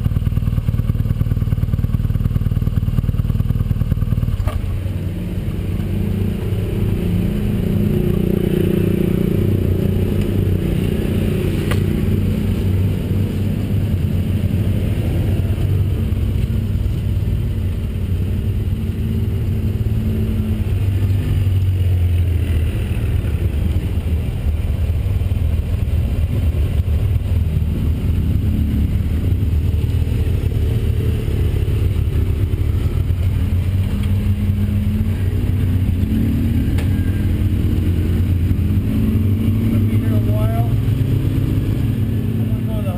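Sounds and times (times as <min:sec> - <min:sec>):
motorcycle engine running: 0:00.0 - 0:42.9.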